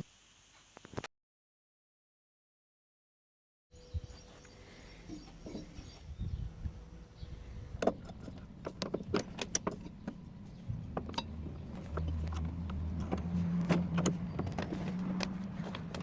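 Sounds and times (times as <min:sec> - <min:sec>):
low steady hum: 0:03.8 - 0:16.0
hand tools and metal parts clinking: 0:05.0 - 0:06.0, 0:07.8 - 0:16.0.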